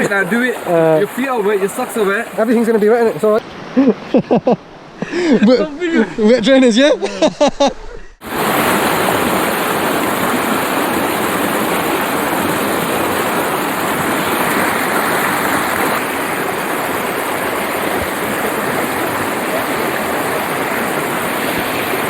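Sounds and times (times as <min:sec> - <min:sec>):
waterfall and river rushing: 0:00.0 - 0:03.7, 0:08.2 - 0:22.0.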